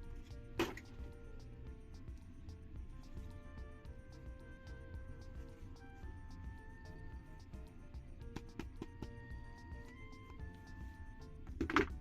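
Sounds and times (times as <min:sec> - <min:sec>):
simple electronic melody: 0:00.0 - 0:12.0.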